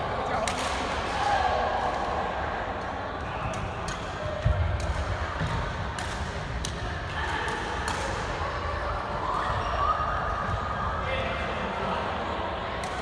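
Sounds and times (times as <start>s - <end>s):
racket hitting shuttlecock: 0.4s - 2.0s, 3.8s - 6.9s.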